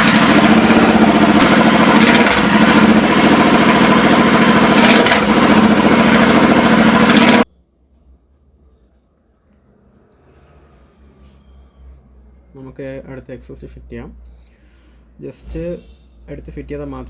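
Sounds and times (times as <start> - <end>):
motorcycle engine with open exhaust: 0.0 - 7.5.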